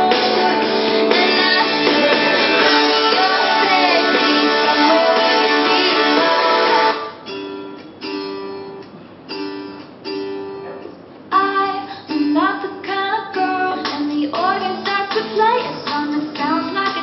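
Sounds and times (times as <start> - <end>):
person singing: 0.0 - 7.2, 11.3 - 17.0
plucked guitar notes: 0.0 - 10.9, 12.1 - 14.9.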